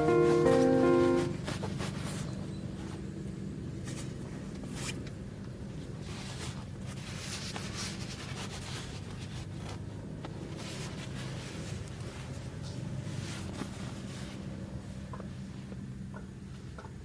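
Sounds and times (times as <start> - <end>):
scratchy handling rustles: 0.1 - 3.1, 5.8 - 14.6.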